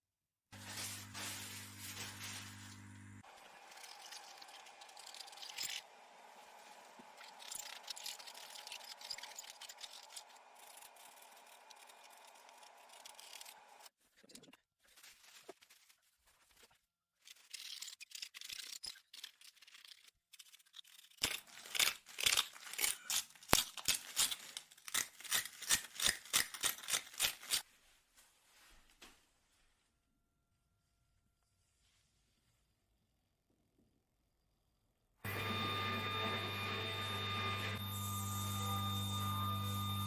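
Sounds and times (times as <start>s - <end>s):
rustling and scraping: 0.6s - 5.8s
scissors snipping: 20.4s - 27.6s.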